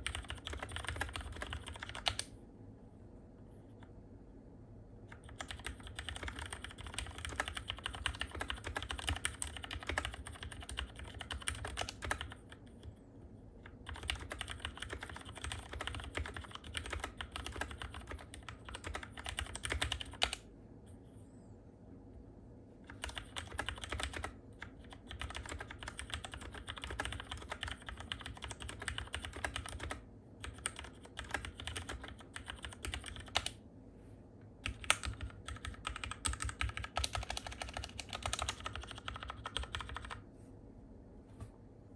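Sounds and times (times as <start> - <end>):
mechanical keyboard typing: 0.0 - 2.3, 5.1 - 12.9, 13.6 - 20.5, 22.8 - 33.6, 34.6 - 40.2.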